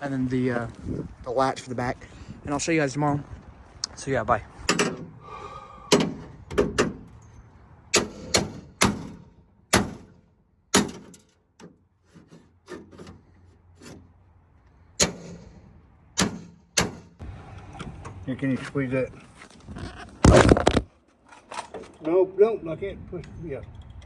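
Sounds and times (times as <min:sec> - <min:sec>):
sharp knocks and clicks: 0:05.9 - 0:07.2, 0:16.2 - 0:18.2.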